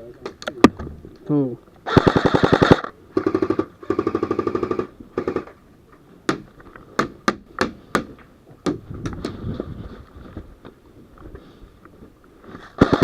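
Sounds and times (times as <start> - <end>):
airsoft gun full-auto bursts: 1.9 - 5.5, 12.8 - 13.0.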